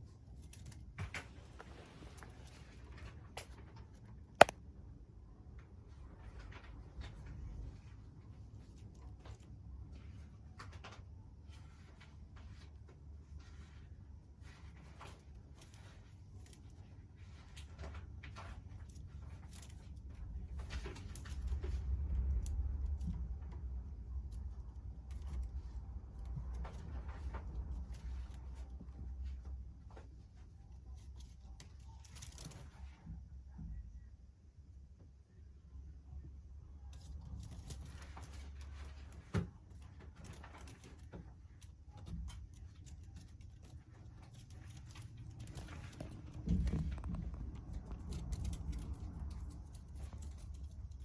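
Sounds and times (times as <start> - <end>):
faint rustles and light clicks: 0.0 - 4.6, 5.4 - 34.2, 36.0 - 51.0
low steady rumble: 0.0 - 51.0
kittens scuffling in basket: 36.9 - 51.0
low rumble: 44.8 - 51.0.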